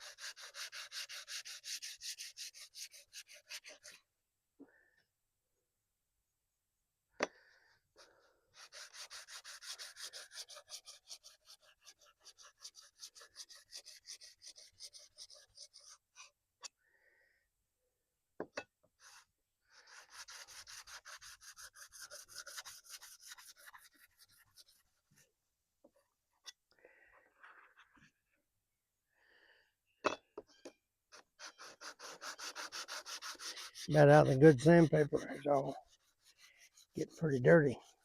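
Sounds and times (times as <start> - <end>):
hand sanding with sandpaper: 0.0 - 4.0, 8.6 - 16.3, 19.8 - 24.9, 31.1 - 38.0.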